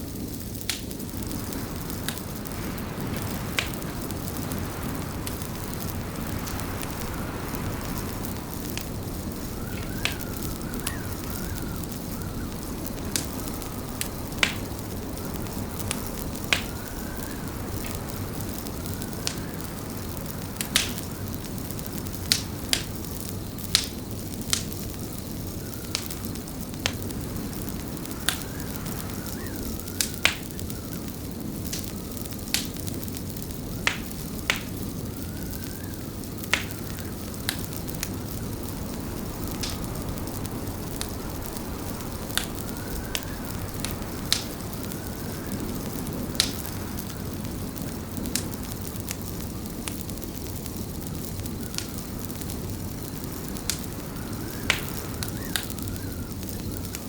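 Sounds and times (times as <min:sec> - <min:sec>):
wood fire crackling and popping: 0:00.0 - 0:57.0
faint wavering whistle: 0:09.2 - 0:14.0, 0:35.0 - 0:36.2.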